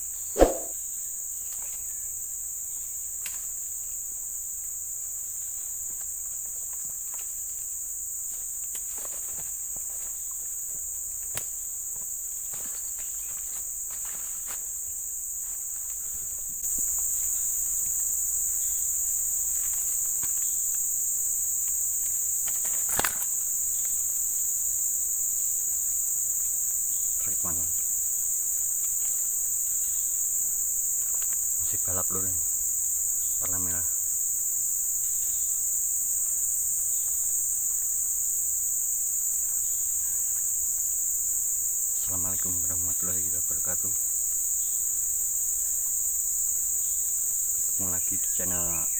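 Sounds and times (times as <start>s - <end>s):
shrill insect chorus: 0.0s - 48.9s
sharp knock: 0.4s - 0.7s.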